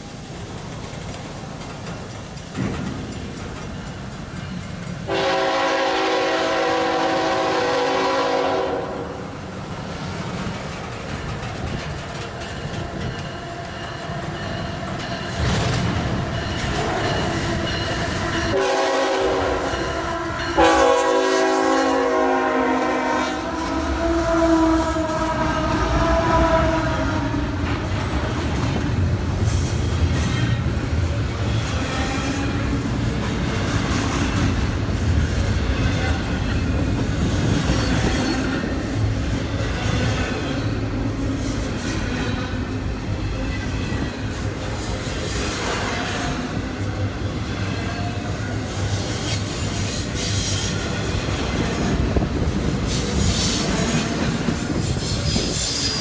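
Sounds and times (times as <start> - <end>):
train wheels on rail: 0.0 - 56.0
locomotive horn blasts: 5.1 - 9.2, 18.5 - 28.4
locomotive rumble: 15.4 - 56.0.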